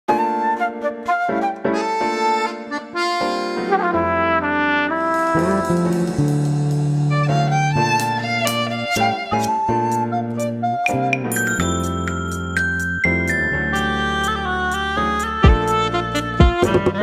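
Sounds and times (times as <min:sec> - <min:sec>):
synthesized melody: 0:05.0 - 0:16.8
low held bass line: 0:05.2 - 0:09.6.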